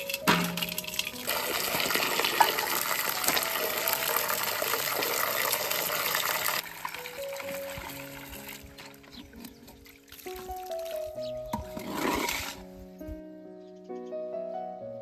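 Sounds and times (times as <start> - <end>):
water gushing into a container: 0.0 - 9.1, 9.8 - 11.1.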